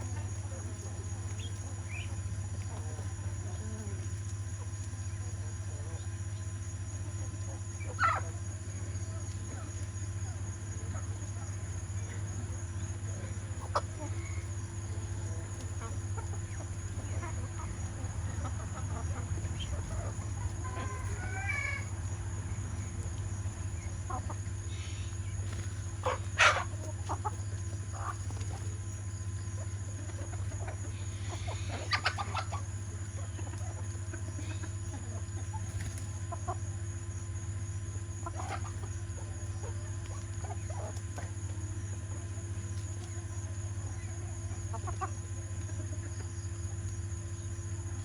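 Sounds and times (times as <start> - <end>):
chickens clucking: 0.0 - 48.0
steady low hum: 0.0 - 48.0.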